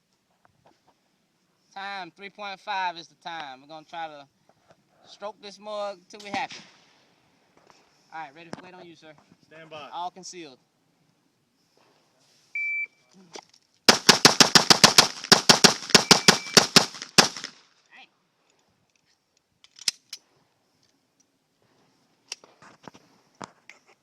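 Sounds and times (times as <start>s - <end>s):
rapid pistol shots: 13.9s - 17.6s
shot timer beep: 16.0s - 16.6s.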